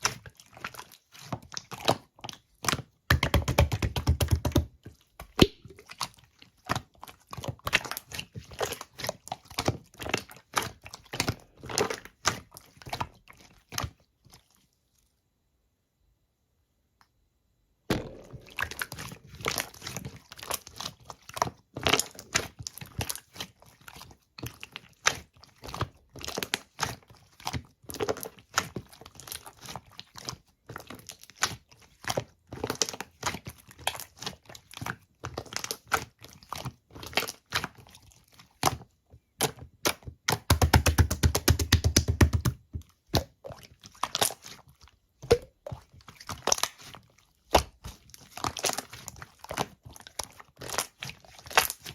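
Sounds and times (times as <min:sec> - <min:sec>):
slime clicking and popping: 0:05.3 - 0:05.8.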